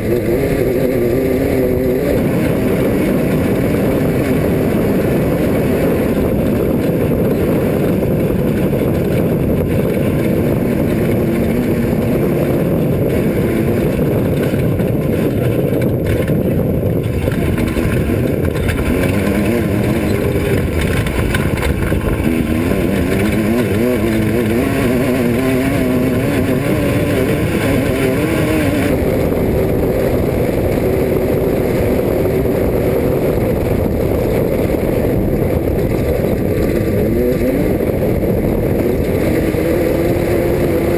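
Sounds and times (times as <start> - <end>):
dense steady rumble: 0.0 - 40.9
race car engine revving: 0.0 - 40.9.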